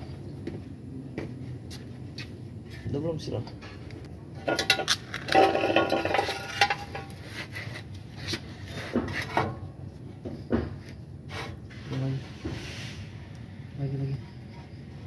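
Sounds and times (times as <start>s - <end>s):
metal parts knocking and scraping: 3.6s - 7.8s
metal tools clinking: 4.4s - 7.2s.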